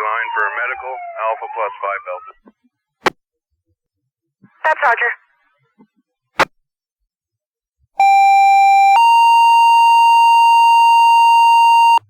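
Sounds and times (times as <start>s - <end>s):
two-tone paging tones: 8.0s - 12.0s.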